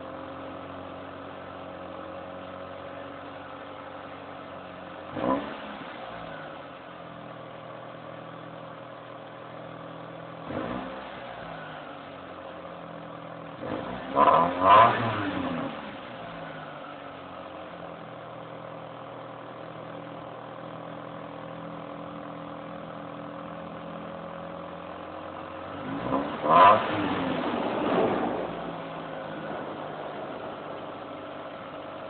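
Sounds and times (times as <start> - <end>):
car engine idling and revving: 0.0 - 32.0.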